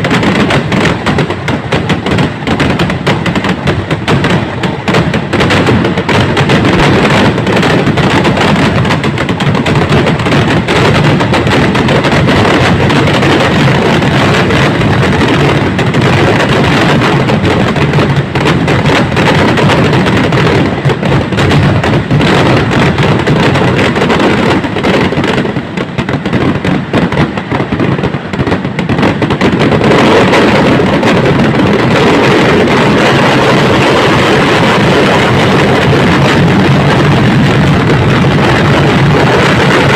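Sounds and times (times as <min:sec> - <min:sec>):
firecracker bursts: 0:00.0 - 0:39.9.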